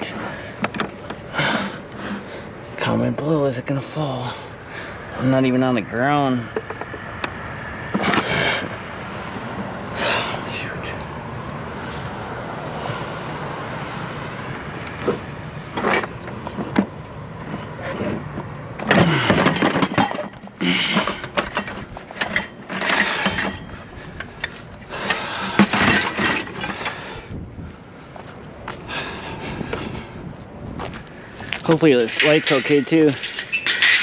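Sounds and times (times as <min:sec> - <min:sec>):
steady background hum: 0:00.0 - 0:34.0
debris scraping and clattering: 0:18.8 - 0:27.0, 0:31.6 - 0:34.0.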